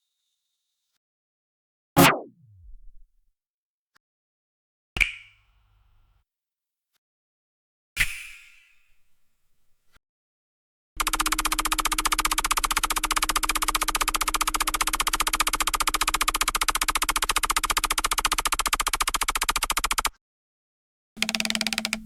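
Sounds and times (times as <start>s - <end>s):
fast ticking: 11.0s - 20.1s, 21.2s - 22.0s.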